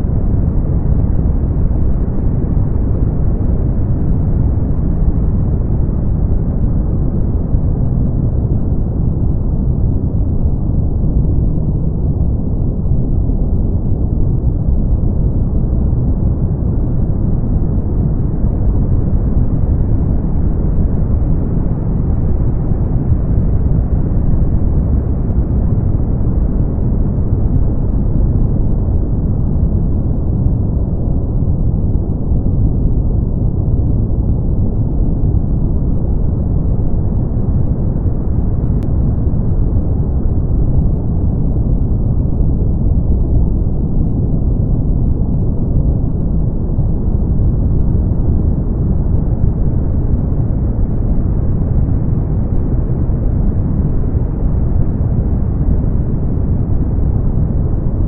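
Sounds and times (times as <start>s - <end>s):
brown noise hiss: 0.0s - 58.0s.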